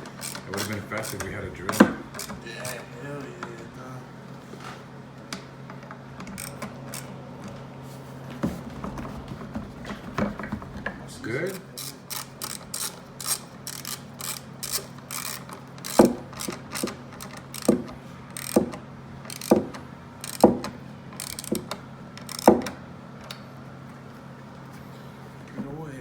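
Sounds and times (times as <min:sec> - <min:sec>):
hand ratchet clicking: 0:00.0 - 0:02.8, 0:06.2 - 0:07.1, 0:11.5 - 0:22.8.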